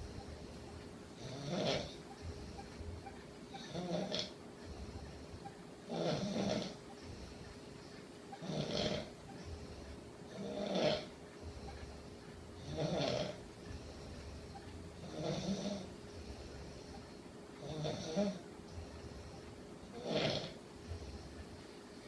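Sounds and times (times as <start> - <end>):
person snoring: 1.2 - 2.0, 5.9 - 6.8, 8.4 - 9.1, 9.7 - 11.7, 12.6 - 13.4, 15.0 - 17.0, 17.6 - 21.4.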